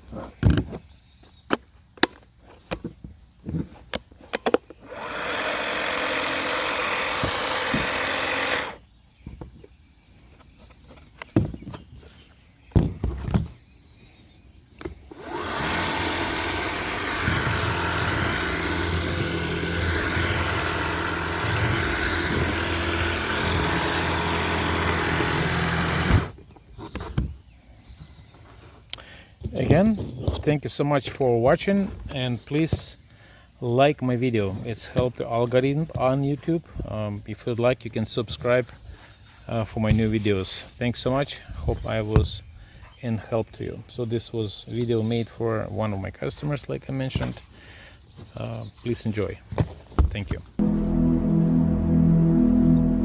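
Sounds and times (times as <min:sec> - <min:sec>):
handling clicks and knocks: 0:00.4 - 0:04.8
cordless sweeper running: 0:04.8 - 0:08.8, 0:15.1 - 0:26.4
low hum: 0:15.2 - 0:26.3, 0:50.6 - 0:53.0.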